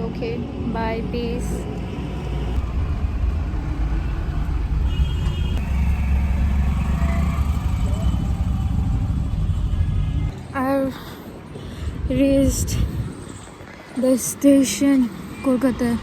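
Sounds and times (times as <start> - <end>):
bus engine and road rumble: 0.0 - 16.0.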